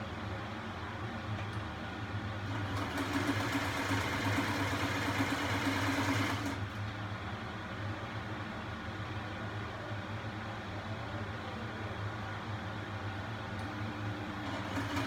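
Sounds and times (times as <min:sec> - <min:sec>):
sewing machine stitching: 0:02.5 - 0:06.6, 0:14.4 - 0:15.0.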